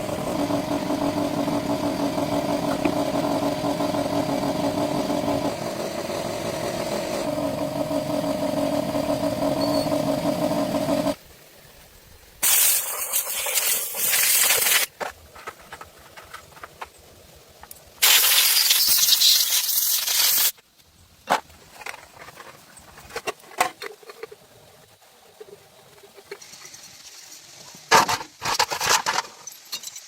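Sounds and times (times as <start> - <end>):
loud hissing: 12.4 - 14.9, 18.0 - 20.5.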